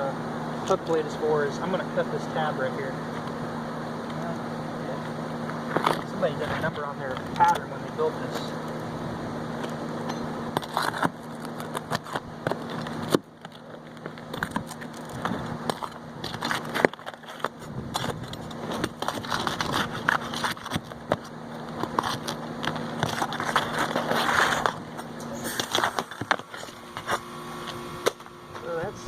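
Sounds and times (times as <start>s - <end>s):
shingles scraping and tearing: 10.5s - 28.2s.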